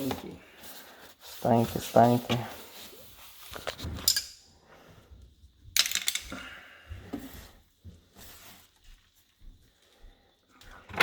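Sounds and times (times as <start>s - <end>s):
metal parts clinking and rattling: 4.0s - 4.4s, 5.8s - 6.5s
clatter of tools: 5.8s - 6.5s.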